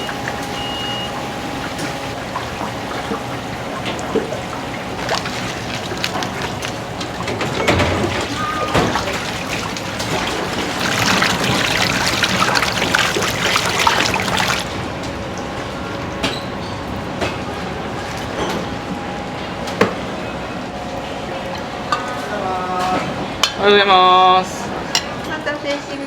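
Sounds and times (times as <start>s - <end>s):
water running and splashing: 0.0s - 15.0s.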